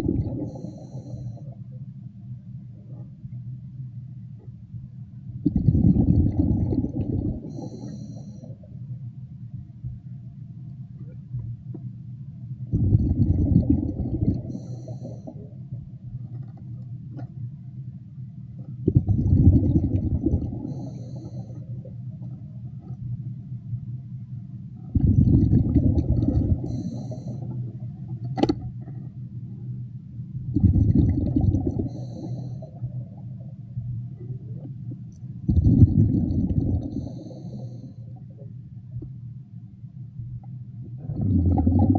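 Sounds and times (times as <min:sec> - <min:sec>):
exhaled bubbles rumbling underwater: 0:00.0 - 0:03.8, 0:04.4 - 0:41.9
steady low hum: 0:00.0 - 0:41.9
regulator inhale hiss: 0:00.4 - 0:01.6, 0:07.5 - 0:08.6, 0:14.5 - 0:15.4, 0:20.7 - 0:21.8, 0:26.7 - 0:27.5, 0:31.9 - 0:32.8, 0:36.9 - 0:38.2.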